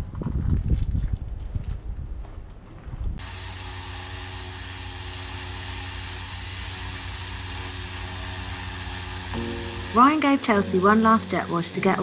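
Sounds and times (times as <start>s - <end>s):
pressure washer pump humming: 3.5s - 12.0s.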